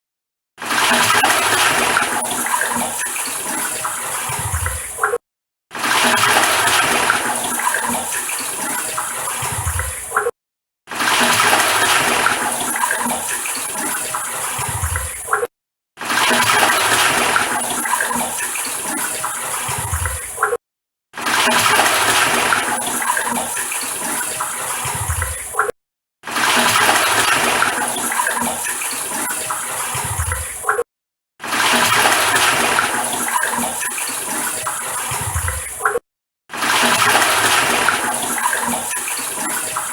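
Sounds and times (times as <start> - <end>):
toilet flushing: 0.6 - 5.1, 5.7 - 10.2, 10.9 - 20.4, 21.2 - 25.7, 26.3 - 30.7, 31.4 - 39.9.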